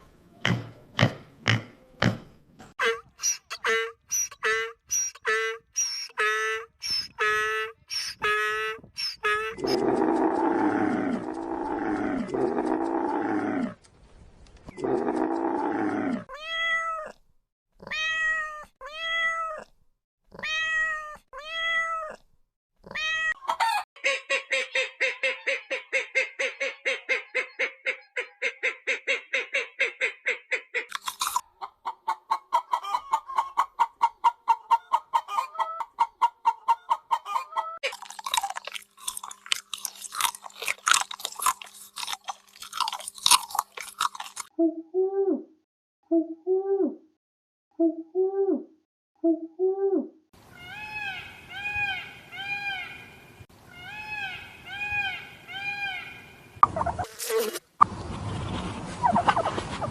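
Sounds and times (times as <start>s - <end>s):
cat meowing: 16.3s - 17.2s, 17.8s - 19.7s, 20.3s - 22.2s, 22.8s - 23.4s.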